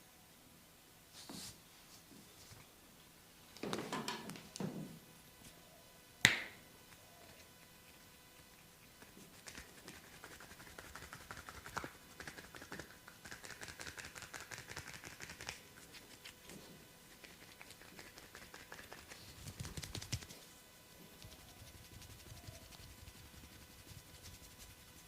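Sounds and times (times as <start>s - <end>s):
hands rubbing skin: 6.9s - 20.4s, 21.2s - 25.0s.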